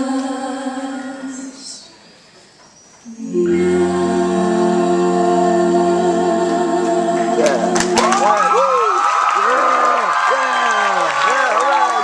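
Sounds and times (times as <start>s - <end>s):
vocal quartet holding a chord: 0.0s - 1.9s, 3.0s - 8.8s.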